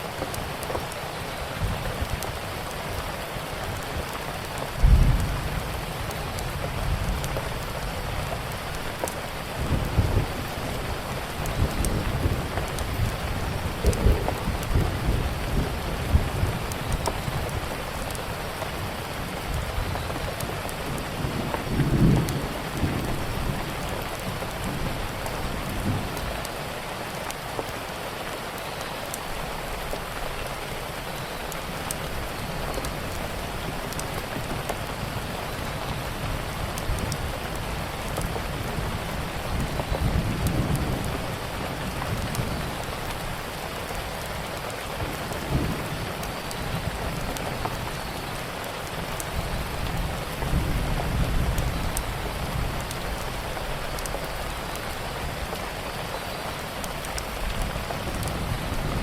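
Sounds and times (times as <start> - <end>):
steady rainfall hissing: 0.0 - 59.0
distant thunder rumbles: 4.8 - 18.2.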